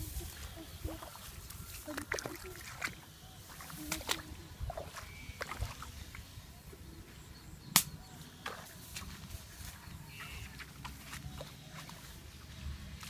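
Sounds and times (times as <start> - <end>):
sharp crack: 7.7 - 8.0.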